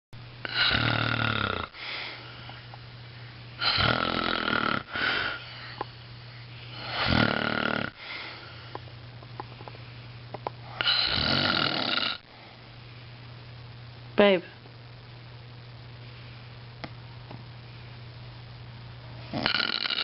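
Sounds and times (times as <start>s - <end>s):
man snoring: 0.4s - 2.0s, 3.6s - 5.4s, 6.7s - 8.0s, 10.8s - 12.2s, 19.3s - 20.0s
quiet breathing: 1.7s - 3.6s, 4.8s - 7.2s, 7.9s - 11.1s.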